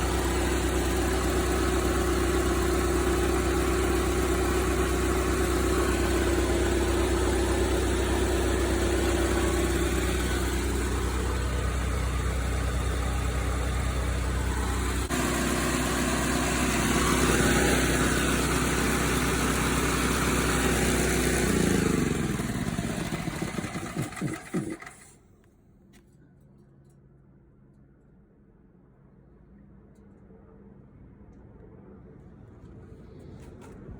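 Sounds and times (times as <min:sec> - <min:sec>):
engine-driven air compressor running: 0:00.0 - 0:25.3.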